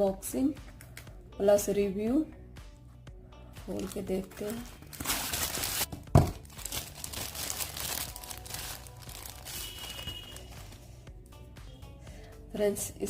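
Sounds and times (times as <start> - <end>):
packaging crinkling and rustling: 3.8 - 10.7.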